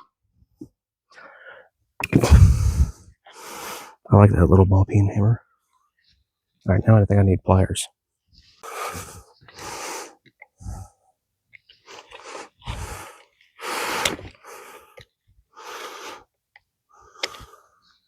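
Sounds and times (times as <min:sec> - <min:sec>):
man breathing hard: 0:01.1 - 0:04.0, 0:08.5 - 0:11.1, 0:11.8 - 0:16.3, 0:16.9 - 0:18.0.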